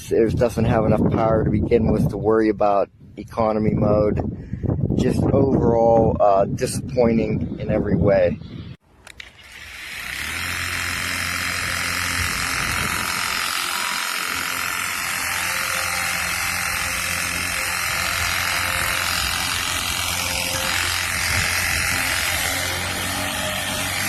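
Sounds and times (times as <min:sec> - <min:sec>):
pump motor humming: 0:09.1 - 0:24.0.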